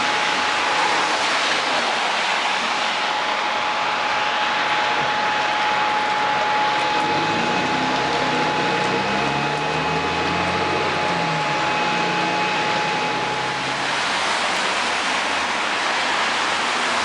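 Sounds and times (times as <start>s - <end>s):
low drone shifting in pitch: 3.7s - 15.8s
thin high tone: 5.8s - 15.4s.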